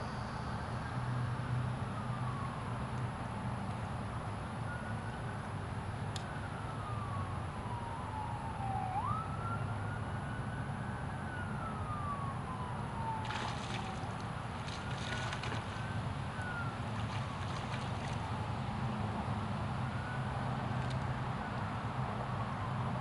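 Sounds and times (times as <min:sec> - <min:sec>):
siren wailing: 0:06.4 - 0:14.1, 0:14.7 - 0:16.9.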